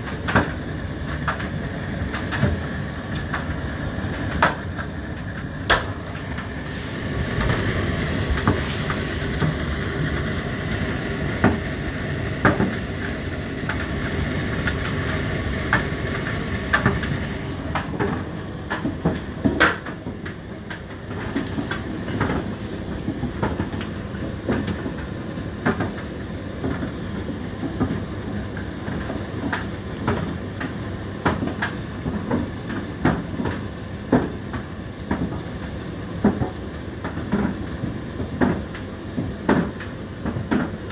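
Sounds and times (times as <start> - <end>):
tumble dryer running: 0.0 - 32.7.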